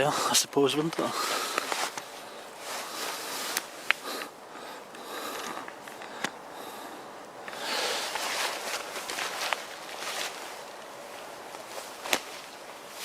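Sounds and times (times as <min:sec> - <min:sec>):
small fire crackling and popping: 0:00.7 - 0:13.0
rushing air: 0:01.1 - 0:13.0.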